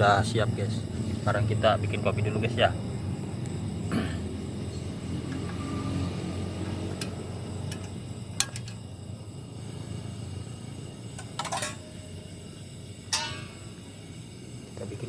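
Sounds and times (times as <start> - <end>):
low background hum: 0.0 - 15.0
metal cookware clinking: 6.9 - 8.8, 11.2 - 12.1, 13.1 - 13.8.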